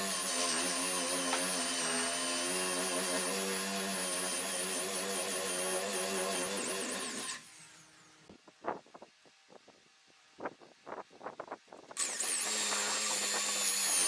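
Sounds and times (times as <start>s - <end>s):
power tool motor whining: 0.0s - 8.2s, 12.0s - 14.0s.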